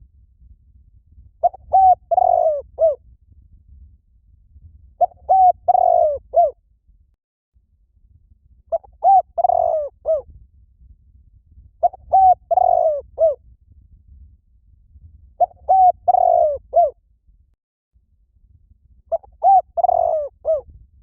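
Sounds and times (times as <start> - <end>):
dove cooing: 1.4 - 3.0, 5.0 - 6.6, 8.7 - 10.2, 11.8 - 13.4, 15.4 - 17.0, 19.1 - 20.6.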